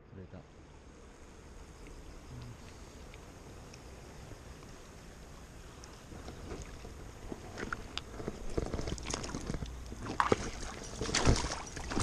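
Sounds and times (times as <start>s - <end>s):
river water sloshing and splashing: 6.4s - 12.0s.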